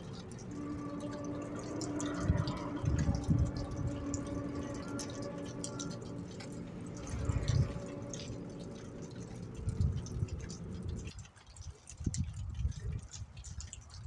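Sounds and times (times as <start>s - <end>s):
low rumbling surges: 0.0s - 11.2s
droning hum with overtones: 0.0s - 11.3s.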